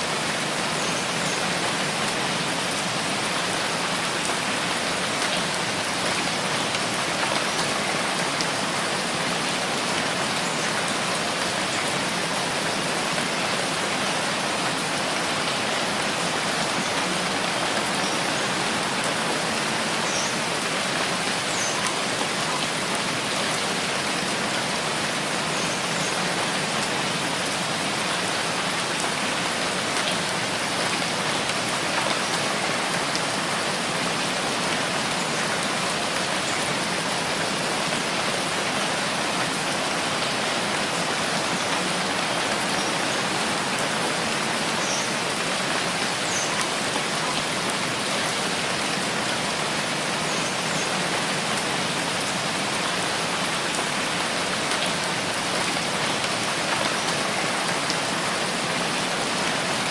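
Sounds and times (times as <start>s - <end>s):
rain hissing on a surface: 0.0s - 59.9s.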